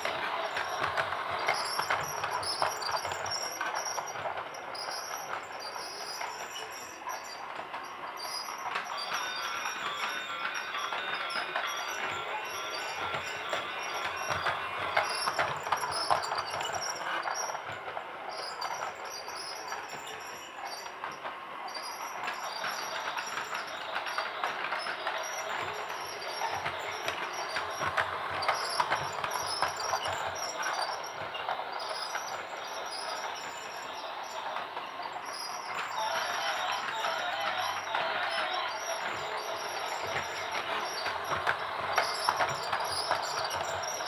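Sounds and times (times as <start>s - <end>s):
toy train clattering whir: 0.0s - 44.0s.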